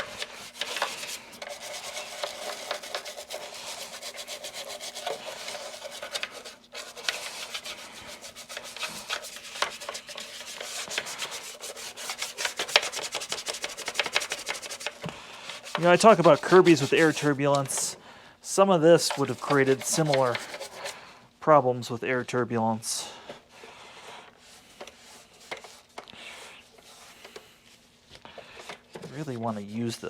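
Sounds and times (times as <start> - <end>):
scrubbing by hand: 0.0 - 17.9, 18.9 - 21.0.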